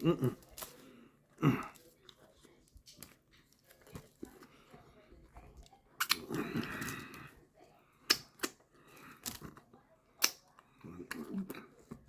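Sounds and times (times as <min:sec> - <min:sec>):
person chewing sandwich: 0:00.0 - 0:07.4.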